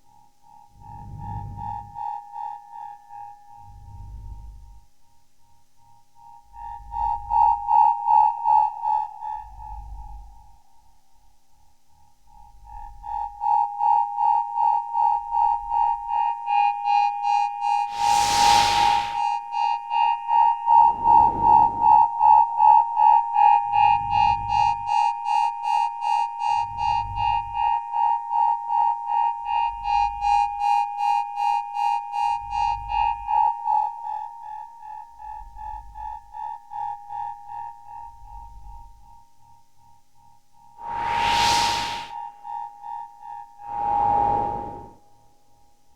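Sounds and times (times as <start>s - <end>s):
brief noisy swell: 17.9s - 19.4s, 40.8s - 42.2s, 43.6s - 45.0s
high synth tone pulsing: 40.8s - 42.1s, 43.7s - 45.0s.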